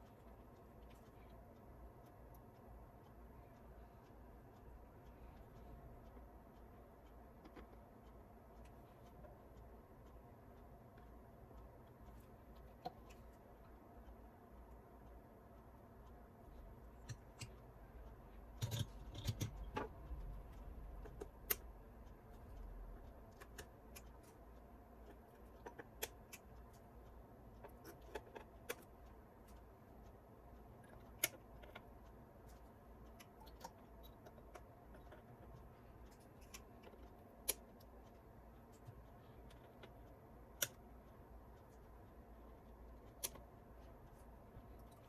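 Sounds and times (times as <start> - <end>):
small parts clicking and clinking: 18.5 - 19.9.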